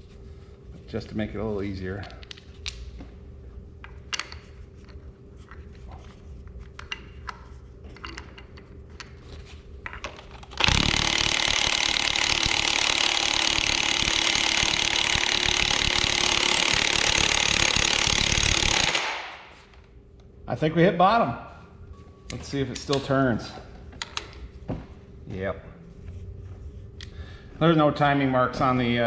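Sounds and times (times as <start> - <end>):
impact wrench hammering a bolt: 10.6 - 19.5.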